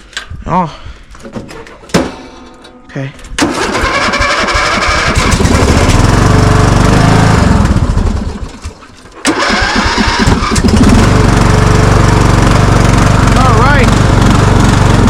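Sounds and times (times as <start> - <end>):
riding lawn mower engine running rough: 3.4 - 15.0.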